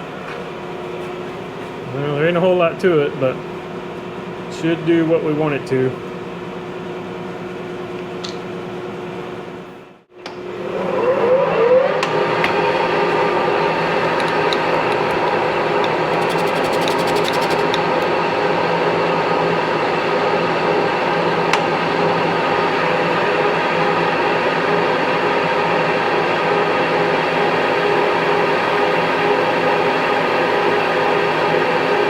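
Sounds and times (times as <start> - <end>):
small electric motor whirring: 12.3 - 18.1.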